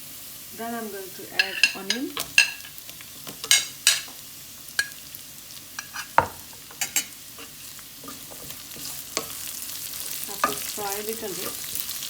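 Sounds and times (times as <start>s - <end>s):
onion sizzling in a pan: 0.0s - 12.0s
utensil knocking and scraping pan: 1.3s - 4.2s, 5.8s - 9.4s, 10.0s - 11.9s.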